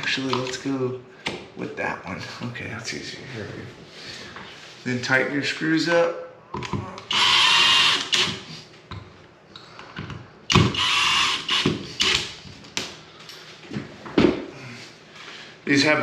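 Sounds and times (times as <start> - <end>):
power drill driving screws: 7.1 - 8.6, 10.5 - 12.3.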